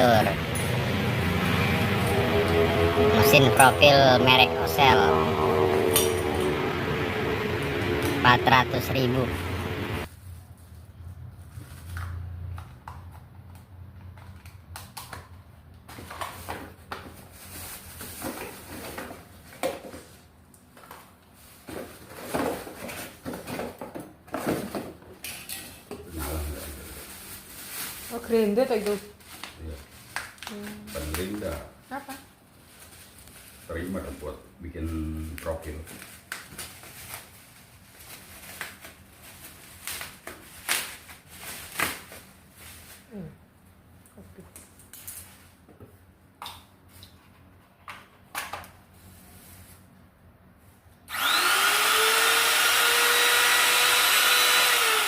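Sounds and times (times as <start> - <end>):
packaging rustling: 35.6 - 43.1.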